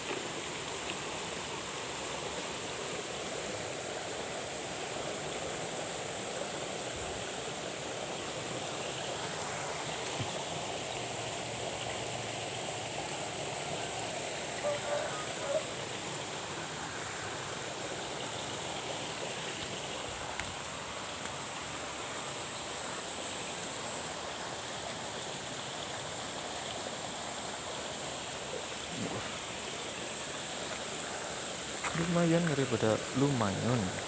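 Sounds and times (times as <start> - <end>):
running water rushing: 0.0 - 34.0
thin high-pitched hiss: 8.6 - 12.3, 26.6 - 34.0.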